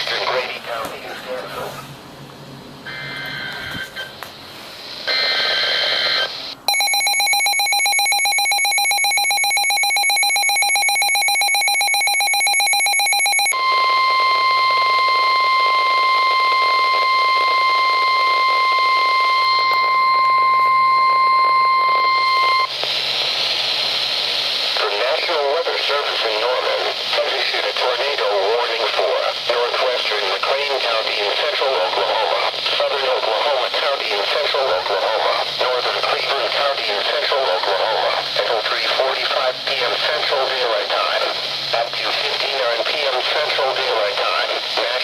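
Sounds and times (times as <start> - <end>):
electronic data tones: 6.2 - 22.7
steady piercing warning tone: 6.7 - 22.7.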